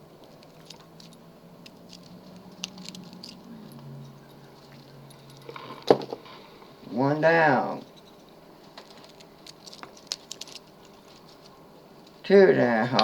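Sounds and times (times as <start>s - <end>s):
lock pick metallic clicks: 0.2s - 5.5s.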